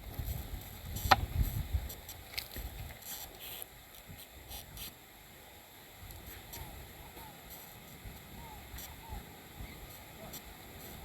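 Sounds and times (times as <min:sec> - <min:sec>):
wind buffeting microphone: 0:00.0 - 0:03.0.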